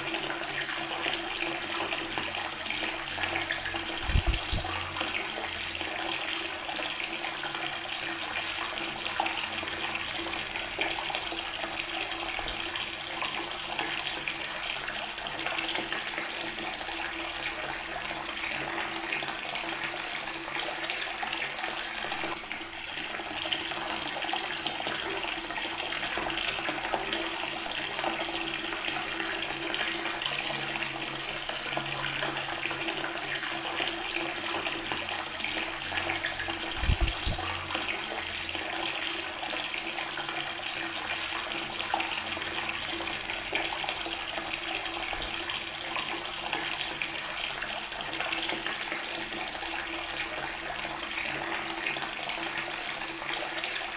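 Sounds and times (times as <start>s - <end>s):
water tap splashing on stone: 2.9s - 5.6s, 31.3s - 38.6s.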